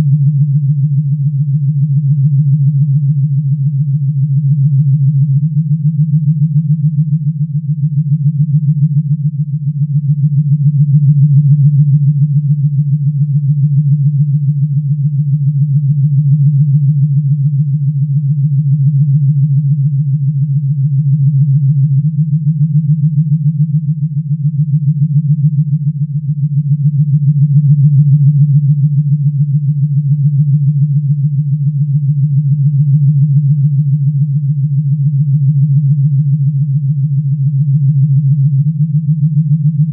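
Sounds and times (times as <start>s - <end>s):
fluttering electronic hum: 0.0s - 39.9s.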